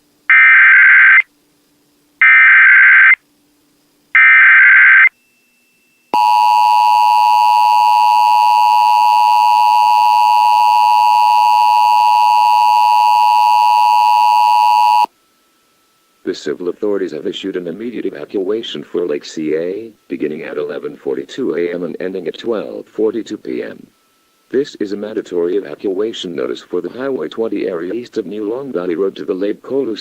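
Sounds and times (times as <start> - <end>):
harsh digital data bursts: 0.3 - 1.3, 2.2 - 3.2, 4.1 - 5.1
two-tone attention signal: 6.2 - 15.1.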